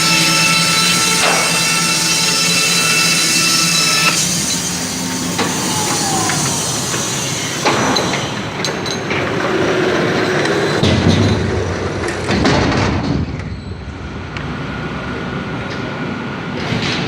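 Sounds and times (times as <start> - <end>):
sharp knocks and clanks: 0.0 - 4.6, 5.2 - 14.5
sawmill running: 0.0 - 16.6.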